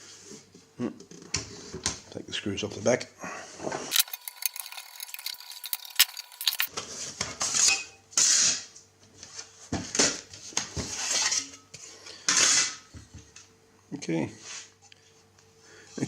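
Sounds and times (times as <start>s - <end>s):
small metallic clicks of screws: 3.9s - 6.7s.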